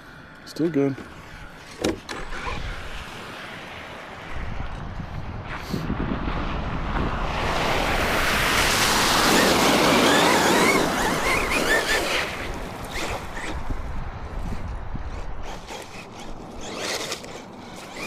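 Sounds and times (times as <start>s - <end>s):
rc car splashing through mud: 7.3s - 13.6s, 15.4s - 18.0s
electric motor whine: 9.2s - 13.8s, 15.4s - 18.0s.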